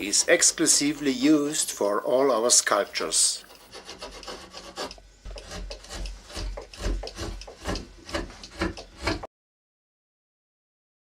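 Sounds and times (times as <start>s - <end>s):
carving tool scraping wood: 3.4s - 9.3s.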